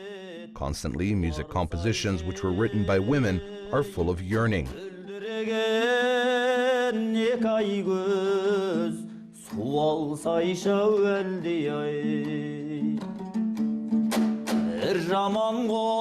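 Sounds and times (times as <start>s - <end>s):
person singing folk song: 0.0s - 16.0s.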